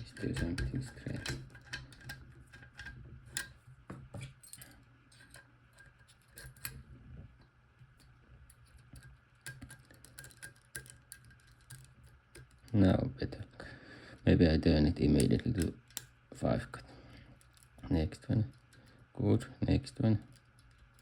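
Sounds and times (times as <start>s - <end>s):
lock pick metallic clicks: 8.5s - 12.8s, 15.2s - 16.2s.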